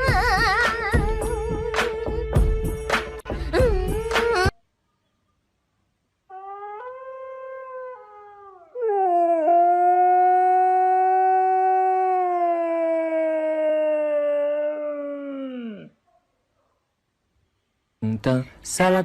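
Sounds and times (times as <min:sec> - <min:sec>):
dog howling: 0:06.3 - 0:16.0.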